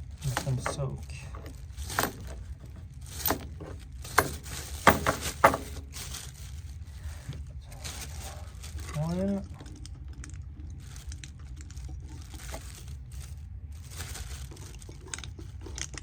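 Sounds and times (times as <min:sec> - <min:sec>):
plastic bag rustling: 0:00.0 - 0:16.0
nuts and bolts clicking: 0:00.1 - 0:06.0.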